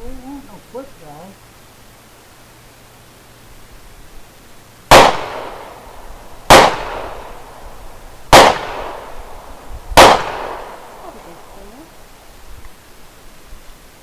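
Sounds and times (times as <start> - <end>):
gunshots: 4.9 - 7.7, 8.3 - 11.5.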